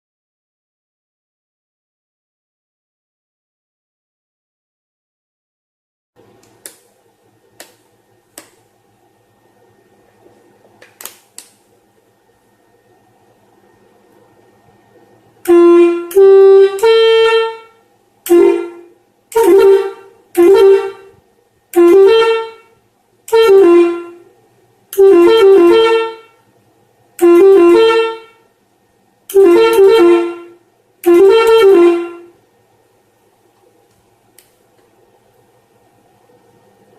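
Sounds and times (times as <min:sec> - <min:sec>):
air horn melodies: 0:15.4 - 0:24.3, 0:25.0 - 0:26.4, 0:27.2 - 0:28.5, 0:29.3 - 0:32.4.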